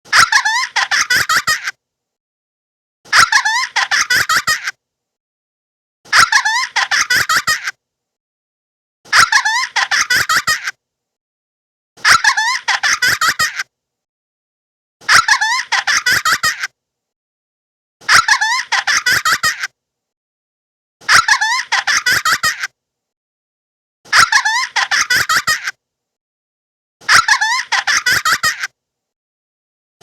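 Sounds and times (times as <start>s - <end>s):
high-pitched giggling effect: 0.1s - 1.8s, 3.1s - 4.8s, 6.1s - 7.8s, 9.1s - 10.8s, 12.0s - 13.7s, 15.0s - 16.7s, 18.0s - 19.7s, 21.0s - 22.7s, 24.1s - 25.8s, 27.0s - 28.7s.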